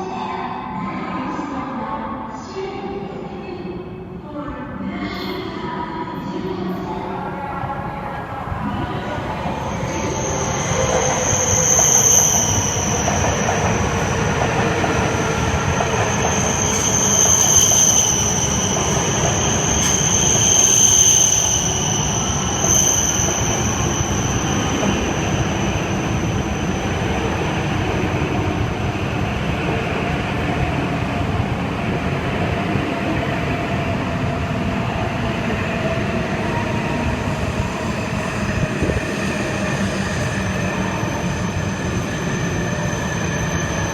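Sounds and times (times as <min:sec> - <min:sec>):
train running noise: 0:08.4 - 0:34.0
high wheel squeal: 0:09.7 - 0:14.3, 0:15.1 - 0:26.9, 0:40.0 - 0:43.9.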